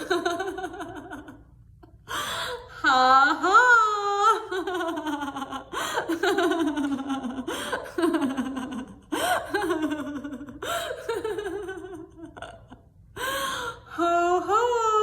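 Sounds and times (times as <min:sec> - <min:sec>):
woman laughing: 0:00.0 - 0:01.4, 0:03.4 - 0:12.8.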